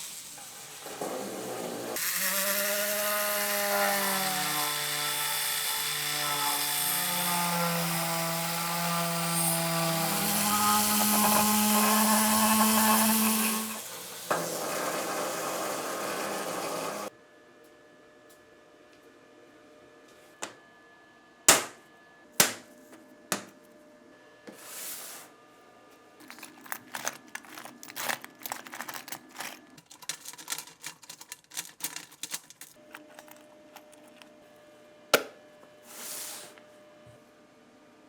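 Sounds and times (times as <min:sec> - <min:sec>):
small clicks and scraping: 0:26.2 - 0:34.4.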